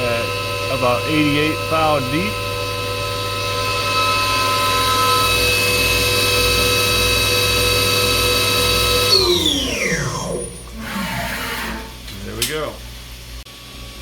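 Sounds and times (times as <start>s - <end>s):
milling machine spindle whine: 0.0s - 12.8s.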